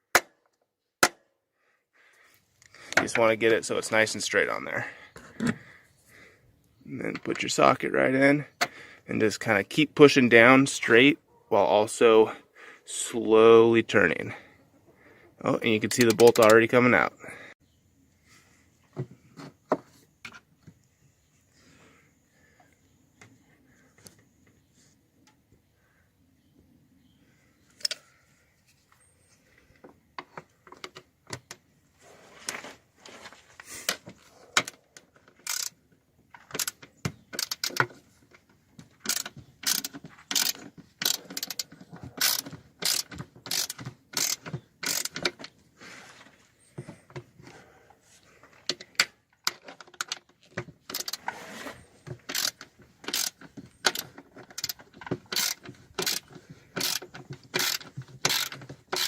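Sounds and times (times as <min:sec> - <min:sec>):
ratchet wrench clicking: 0:35.4 - 0:35.8, 0:36.5 - 0:37.8, 0:39.0 - 0:45.3, 0:50.9 - 0:51.2, 0:52.3 - 0:59.0.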